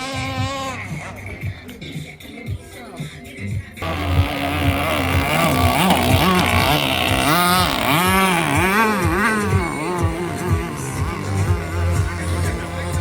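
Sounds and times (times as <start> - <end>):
jet boat engine revving: 0.0 - 2.2, 3.8 - 13.0.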